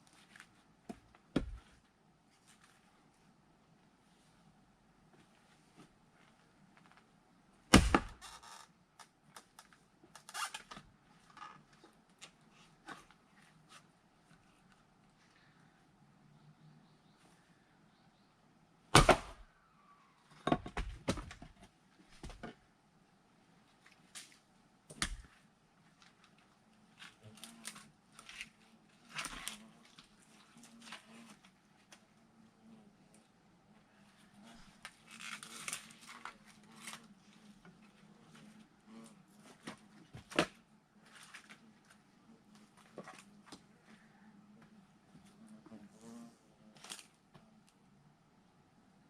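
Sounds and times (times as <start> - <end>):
axe striking log: 7.7 - 8.2, 18.9 - 19.4.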